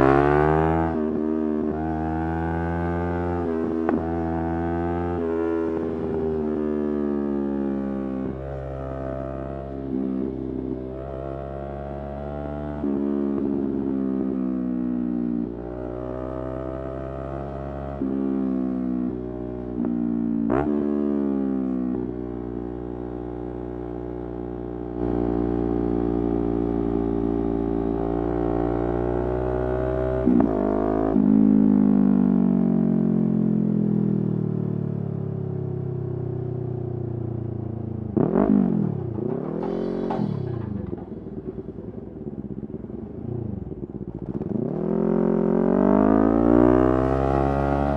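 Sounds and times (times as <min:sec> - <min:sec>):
motorcycle engine running: 0:21.9 - 0:29.5, 0:36.6 - 0:47.9.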